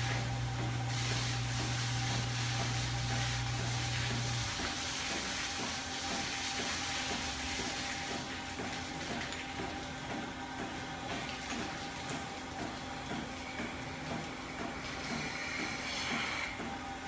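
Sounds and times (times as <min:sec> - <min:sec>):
machinery hum: 0:07.2 - 0:17.0.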